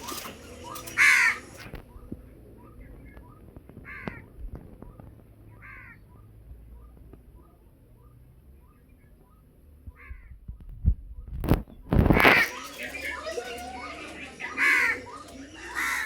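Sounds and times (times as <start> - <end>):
crow cawing: 0.8 - 1.6, 3.8 - 4.3, 5.6 - 6.0, 10.0 - 10.3, 12.3 - 16.0.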